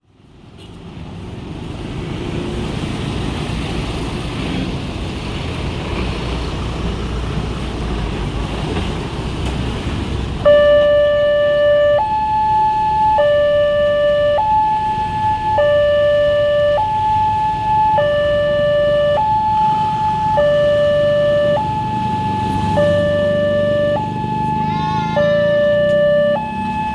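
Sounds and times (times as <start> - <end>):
road traffic noise: 0.0 - 26.9
level crossing warning tone: 10.4 - 26.9.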